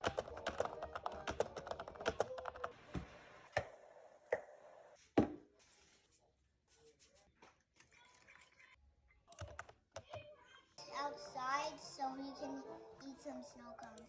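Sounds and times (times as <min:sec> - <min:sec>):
rapid clicks and taps: 0:00.0 - 0:02.8.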